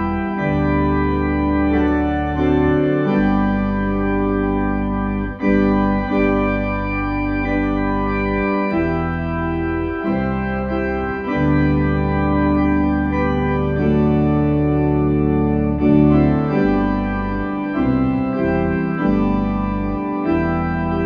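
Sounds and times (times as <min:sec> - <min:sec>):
organ playing sustained chords: 0:00.0 - 0:21.0.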